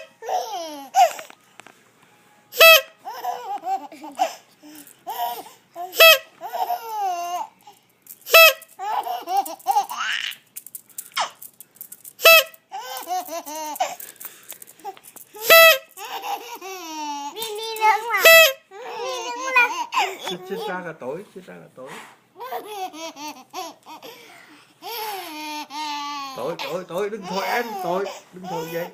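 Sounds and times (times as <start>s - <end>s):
baby laughing: 0.0s - 1.3s, 2.6s - 7.6s, 8.3s - 10.4s, 12.2s - 14.0s, 14.8s - 20.8s, 22.4s - 28.9s
horn honking: 2.2s - 3.0s.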